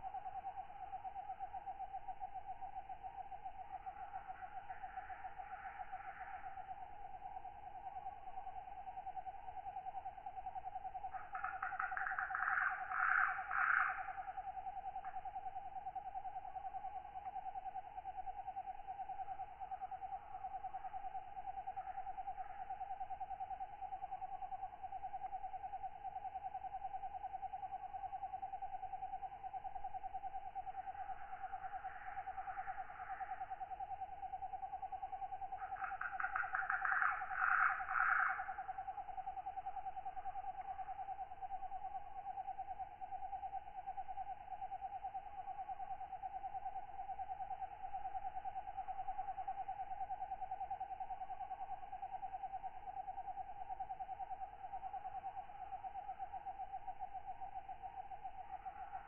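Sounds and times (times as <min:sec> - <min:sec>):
pulsing insect trill: 0:00.0 - 0:59.0
katydid rapid clicks: 0:11.2 - 0:14.0, 0:35.6 - 0:38.8.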